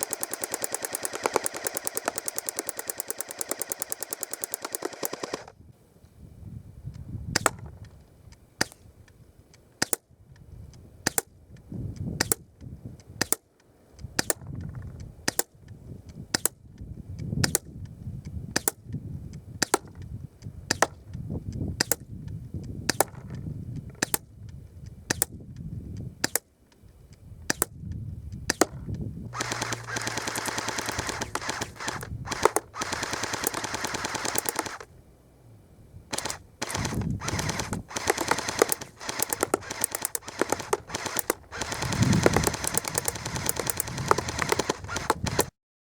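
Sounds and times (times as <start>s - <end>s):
bb gun shots: 0.0s - 5.5s, 7.4s - 7.8s, 28.5s - 34.9s, 36.1s - 45.5s
automatic burst of rapid shots: 0.0s - 5.6s, 28.6s - 34.9s, 36.1s - 45.5s.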